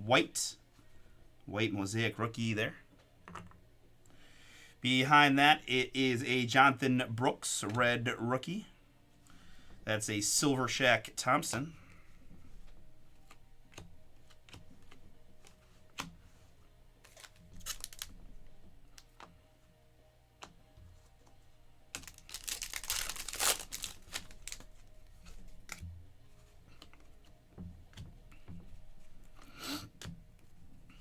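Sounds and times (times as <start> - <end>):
cards clicking and tapping: 12.4 - 16.4, 17.0 - 19.4, 20.4 - 26.0
cards sliding and rustling: 12.4 - 18.2, 22.0 - 25.8.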